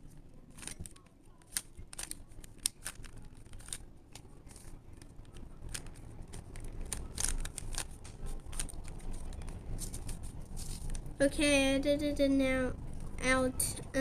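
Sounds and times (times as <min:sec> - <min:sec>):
puzzle cube clicking: 0:00.5 - 0:11.1.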